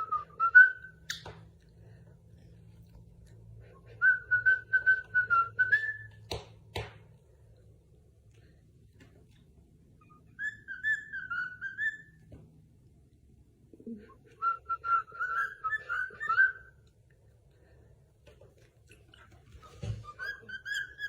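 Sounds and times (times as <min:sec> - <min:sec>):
parrot whistling: 0:10.0 - 0:12.2, 0:14.3 - 0:16.8, 0:20.0 - 0:21.0.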